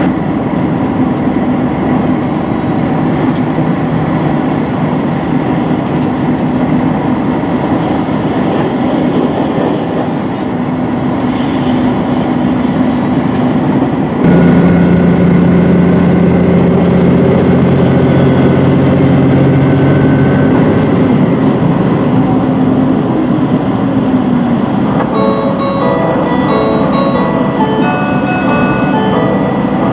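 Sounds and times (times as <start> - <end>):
railcar interior rumble: 0.0 - 29.9
diesel engine droning: 9.6 - 29.9.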